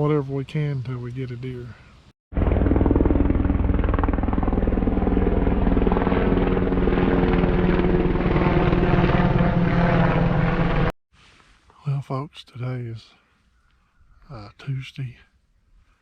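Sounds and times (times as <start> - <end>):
engine running with fast pulsing: 2.4 - 10.9.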